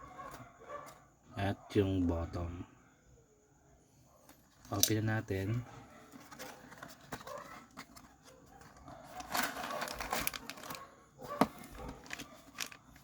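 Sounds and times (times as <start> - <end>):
plastic packaging rustling: 5.9 - 13.0
packaging clicks: 6.1 - 13.0.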